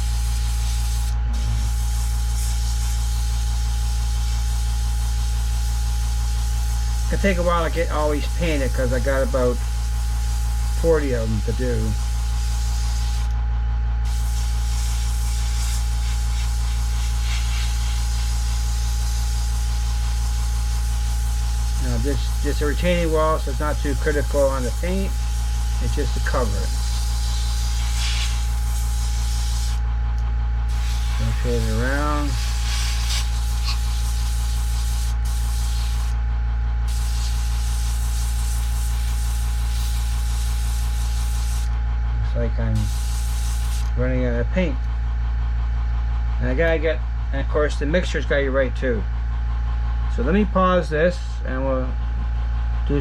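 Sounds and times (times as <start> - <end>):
airbrush hissing: 0.0 - 13.3, 14.0 - 29.8, 30.7 - 36.2, 36.8 - 41.8, 42.8 - 43.9
constant low hum: 0.0 - 53.0.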